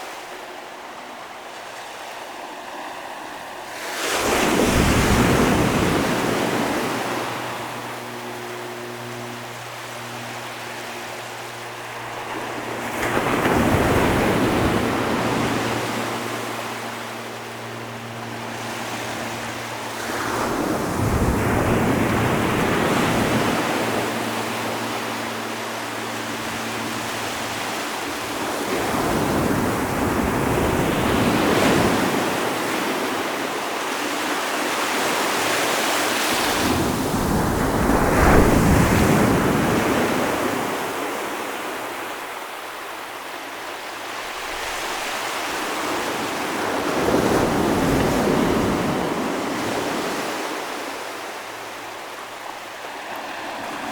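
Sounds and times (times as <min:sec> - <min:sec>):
ocean waves breaking on shore: 0:00.0 - 0:53.9.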